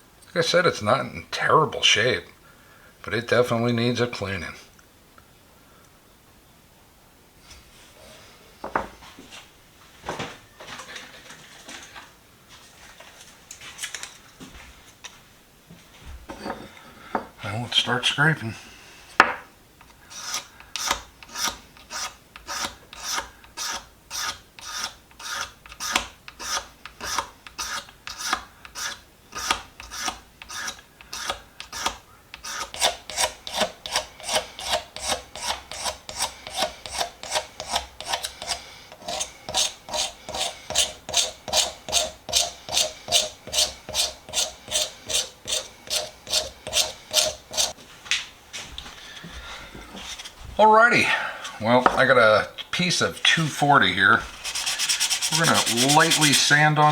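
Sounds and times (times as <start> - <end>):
hand scraping wooden handle: 20.1 - 47.8, 48.8 - 50.7, 51.4 - 56.9.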